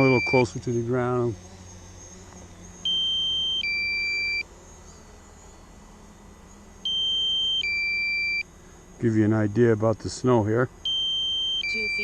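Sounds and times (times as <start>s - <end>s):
electronic warning chime beeping: 0.0s - 1.0s, 2.8s - 4.5s, 6.9s - 8.4s, 10.8s - 12.0s.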